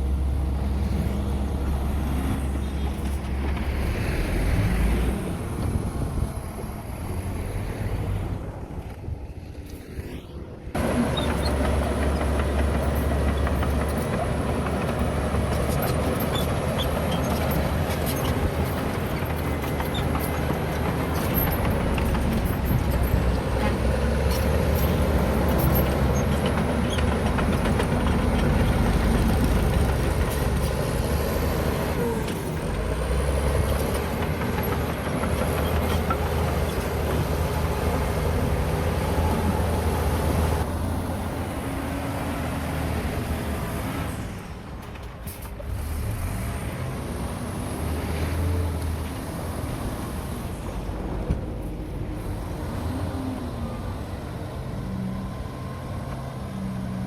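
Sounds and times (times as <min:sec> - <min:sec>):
diesel engine drone under load: 0:00.0 - 0:08.8, 0:10.3 - 0:57.0
machinery clatter and scraping: 0:02.1 - 0:04.2, 0:10.8 - 0:40.7.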